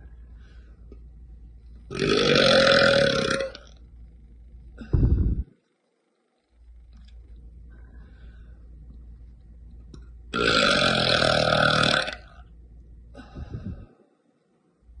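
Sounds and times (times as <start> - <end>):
woman burping loudly: 1.9 - 3.7, 10.4 - 12.3.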